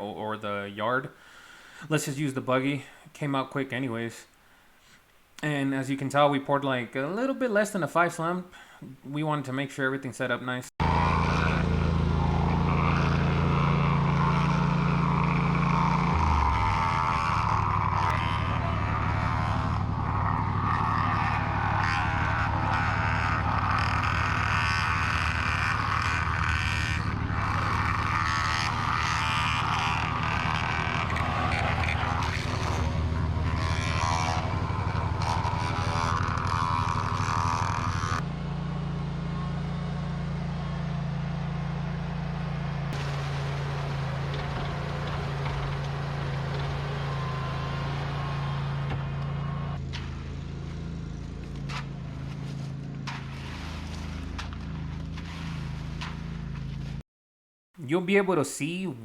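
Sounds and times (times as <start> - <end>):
rough busy noise: 10.8 - 38.2
machinery engine running: 10.8 - 57.0.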